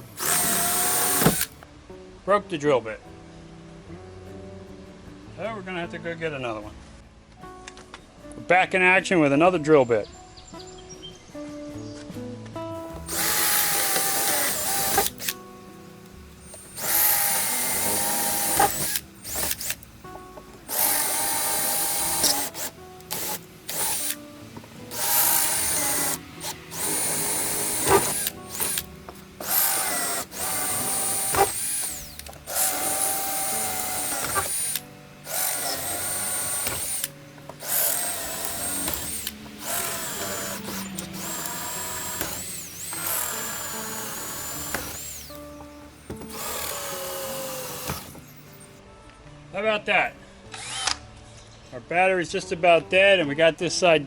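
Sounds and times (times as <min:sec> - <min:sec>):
cordless drill whining: 0:00.0 - 0:01.6, 0:12.8 - 0:48.7, 0:50.6 - 0:51.0.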